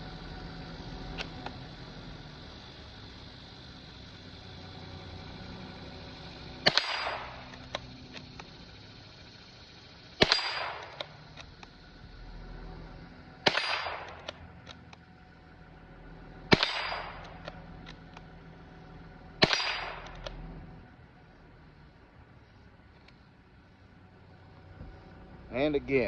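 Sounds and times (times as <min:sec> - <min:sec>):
rifle shots with ringing tail: 0:06.6 - 0:07.6, 0:10.2 - 0:11.3, 0:13.4 - 0:14.5, 0:16.4 - 0:17.6, 0:19.4 - 0:20.2
light rifle clicks: 0:06.7 - 0:08.6.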